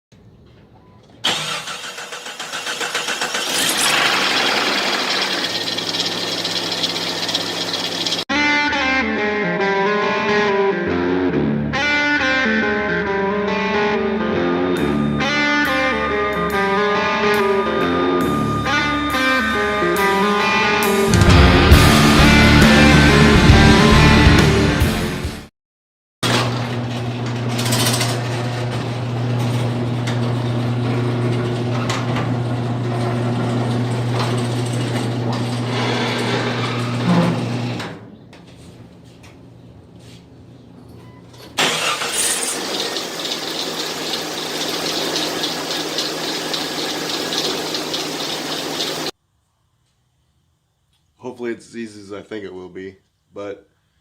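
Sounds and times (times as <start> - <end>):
engine rattle: 1.3 - 8.2
electric guitar melody with effects: 8.3 - 25.4.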